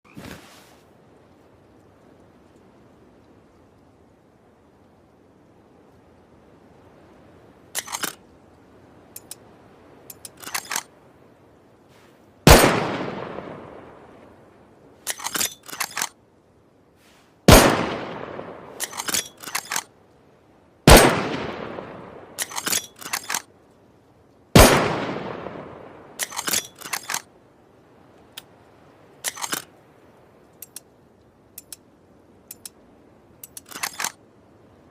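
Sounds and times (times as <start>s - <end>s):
rifle bolt clicks: 7.8s - 8.2s, 15.0s - 16.1s, 22.4s - 23.5s, 26.2s - 27.2s, 29.2s - 29.7s, 33.4s - 34.2s
rifle shots with echo: 12.5s - 13.6s, 17.5s - 18.8s, 20.9s - 22.0s, 24.6s - 25.9s.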